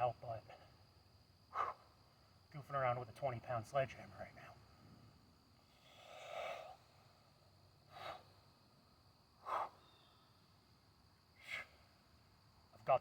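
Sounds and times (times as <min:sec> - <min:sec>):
man breathing hard: 0:01.5 - 0:01.9, 0:05.6 - 0:07.0, 0:07.8 - 0:08.5, 0:09.4 - 0:10.1, 0:11.4 - 0:11.9.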